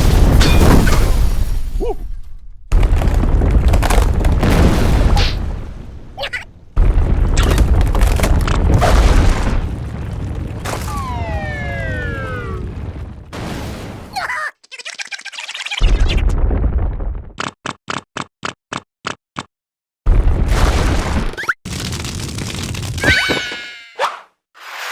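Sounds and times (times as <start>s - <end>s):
earthquake ground rumbling: 0.0s - 14.2s, 15.8s - 17.4s, 20.1s - 23.1s
falling whistle-like glide: 10.9s - 12.6s.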